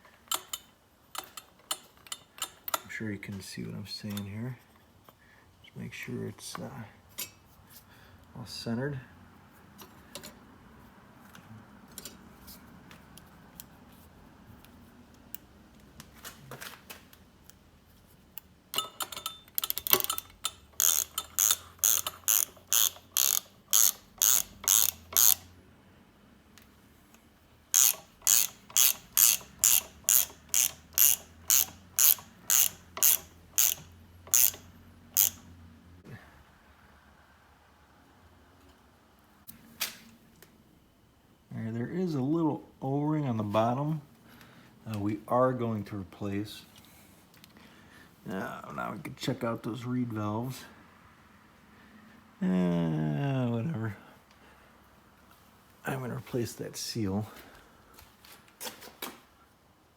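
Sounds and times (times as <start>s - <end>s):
ratchet wrench clicking: 0.3s - 3.0s, 18.4s - 25.5s, 27.7s - 35.5s.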